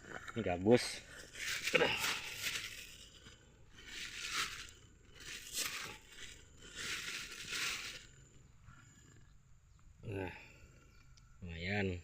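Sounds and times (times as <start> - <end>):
dry brush rustling and crunching: 1.3 - 3.1, 3.8 - 8.1.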